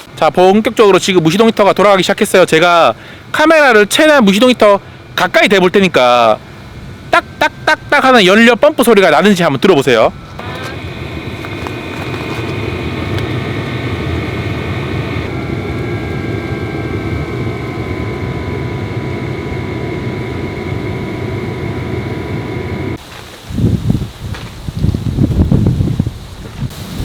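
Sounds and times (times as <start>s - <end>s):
heater blower fan rushing: 0.0s - 27.0s
high motor whine: 4.1s - 23.0s.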